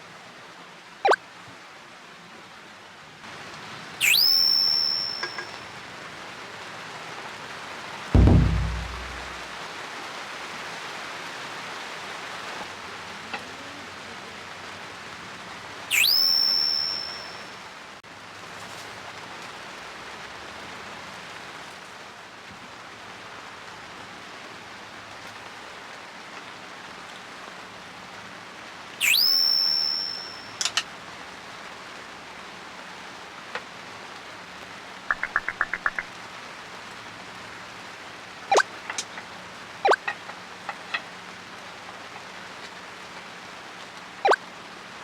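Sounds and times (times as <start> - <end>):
steady rain falling: 0.0 - 4.0, 4.9 - 16.0, 16.8 - 29.0, 30.2 - 45.0
shrill rising whistle: 4.0 - 5.7, 8.2 - 9.4, 15.9 - 17.6, 29.0 - 30.6.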